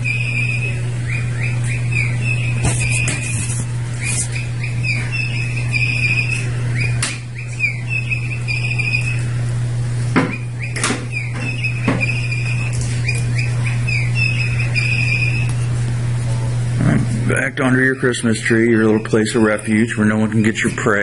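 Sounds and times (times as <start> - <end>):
bird toy chirping: 0.0 - 3.2, 4.0 - 9.3, 10.5 - 15.5
steady low hum: 0.0 - 21.0.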